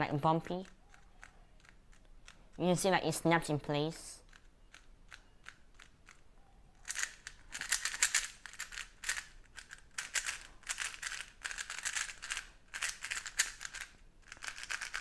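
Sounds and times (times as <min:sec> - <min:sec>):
plastic puzzle cube clicks: 0:00.6 - 0:02.5, 0:04.2 - 0:06.2, 0:06.8 - 0:15.0
fast plastic clacking: 0:06.8 - 0:15.0.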